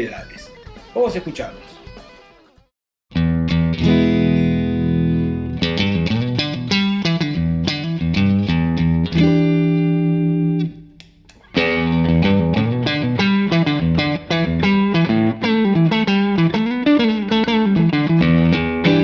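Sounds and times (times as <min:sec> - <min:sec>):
overdriven electric guitar: 0:00.5 - 0:19.0.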